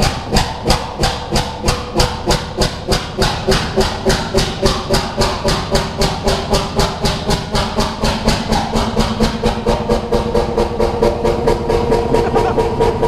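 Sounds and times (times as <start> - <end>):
engine exhaust chuffing: 0.0 - 13.0.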